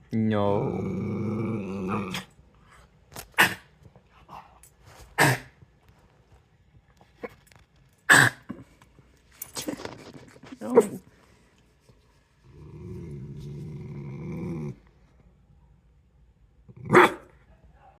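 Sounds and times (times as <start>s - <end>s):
dog growling: 0.4s - 2.4s, 12.4s - 15.0s.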